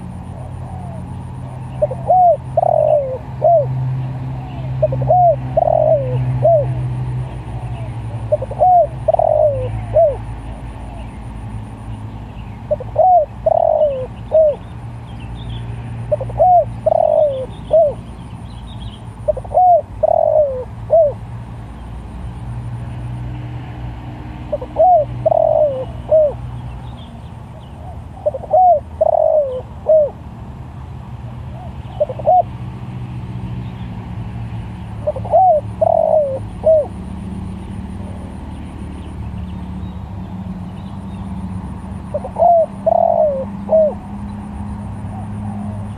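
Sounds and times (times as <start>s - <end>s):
dove cooing: 0.0s - 11.5s, 12.7s - 14.6s, 16.1s - 18.1s, 19.2s - 21.2s, 24.5s - 26.5s, 27.8s - 30.2s, 31.5s - 32.6s, 35.0s - 37.0s, 37.7s - 38.8s, 42.0s - 45.9s.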